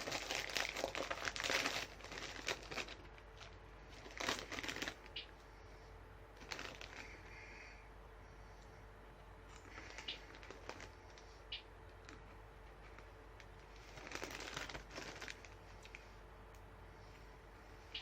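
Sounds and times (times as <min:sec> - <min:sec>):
plastic snack packet crinkling: 0:00.0 - 0:05.2, 0:06.4 - 0:07.3, 0:09.6 - 0:11.3, 0:11.9 - 0:16.0.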